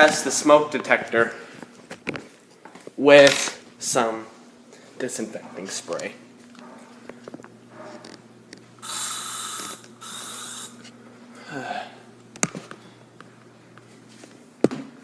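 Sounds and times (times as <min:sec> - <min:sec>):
aerosol spray hissing: 0:08.8 - 0:10.8.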